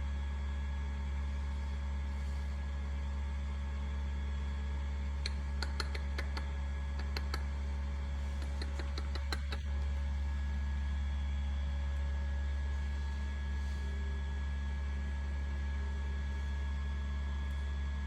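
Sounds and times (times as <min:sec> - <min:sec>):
low electrical hum: 0:00.0 - 0:18.0
sharp clicks and taps: 0:05.2 - 0:07.5, 0:08.3 - 0:09.8.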